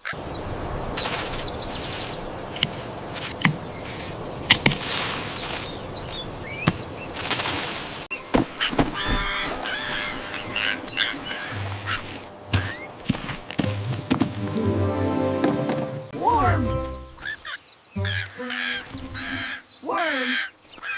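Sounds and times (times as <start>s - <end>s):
steady rustling: 0.9s - 19.6s
harsh bird squawks: 8.6s - 12.9s, 16.3s - 20.9s.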